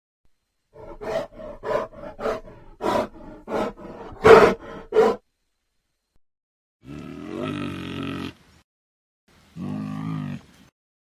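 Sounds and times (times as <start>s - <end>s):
bear growling and roaring: 0.8s - 5.2s, 6.8s - 8.4s.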